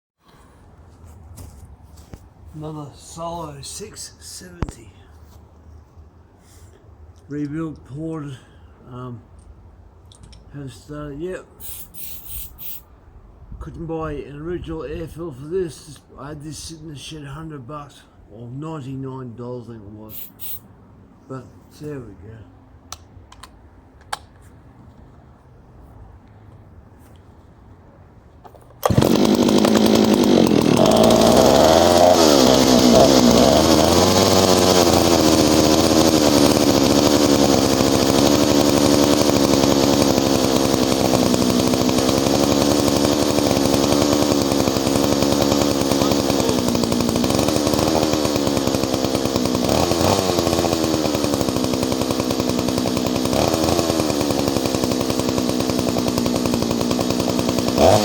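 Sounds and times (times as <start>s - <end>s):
chainsaw revving: 11.6s - 12.8s, 20.1s - 20.6s, 28.8s - 58.0s.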